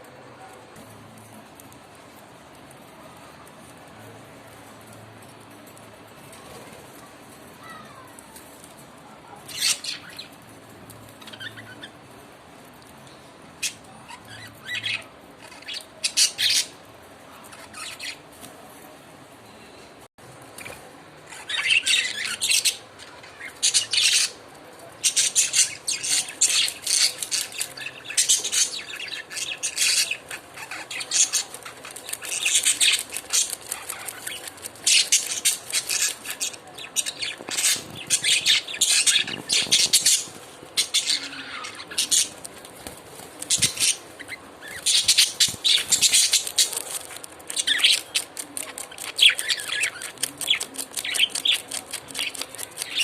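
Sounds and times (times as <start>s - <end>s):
lovebirds chirping and squawking: 8.7s - 18.4s, 20.6s - 53.0s.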